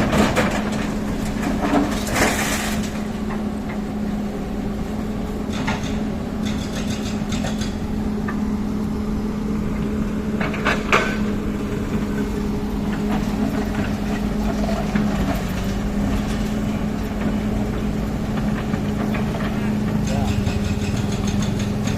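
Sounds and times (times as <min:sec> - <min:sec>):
heavy machine engine running: 0:00.0 - 0:21.9
metallic clanks and clatter: 0:05.5 - 0:07.8, 0:12.9 - 0:21.9.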